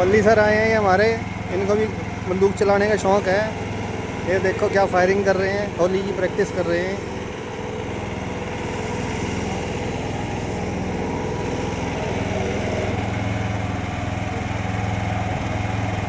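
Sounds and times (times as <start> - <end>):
engine running steadily: 0.0 - 16.0
hiss: 6.3 - 7.5, 8.3 - 13.0.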